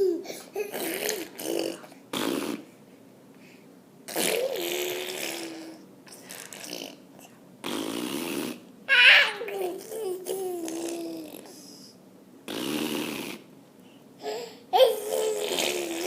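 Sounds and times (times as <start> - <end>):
baby blowing raspberries: 0.7 - 2.7, 4.1 - 7.0, 7.6 - 8.6, 12.5 - 13.5, 14.3 - 16.0
baby voice: 8.9 - 11.8, 14.8 - 16.0.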